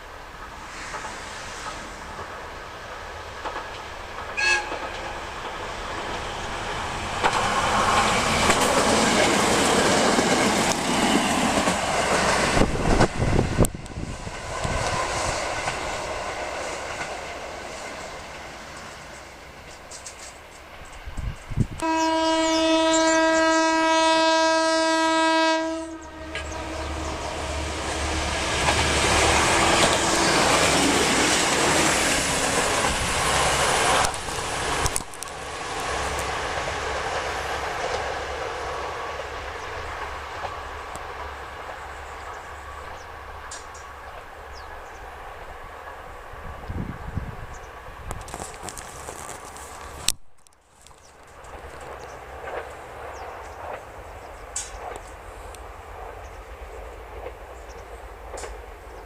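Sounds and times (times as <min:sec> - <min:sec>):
train running noise: 0:00.0 - 0:59.0
train horn blast: 0:04.4 - 0:05.0, 0:21.7 - 0:27.8.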